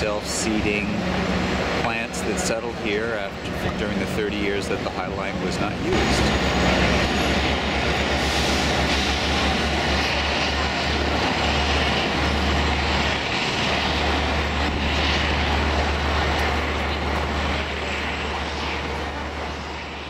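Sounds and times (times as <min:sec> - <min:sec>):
faint voices of passers-by: 0:00.0 - 0:20.0
low fluttering rumble: 0:05.4 - 0:20.0.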